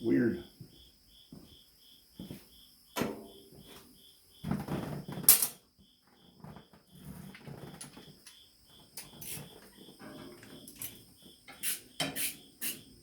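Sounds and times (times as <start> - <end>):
crickets chirping: 0.0 - 13.0
metal tools clinking and rattling: 5.2 - 5.6.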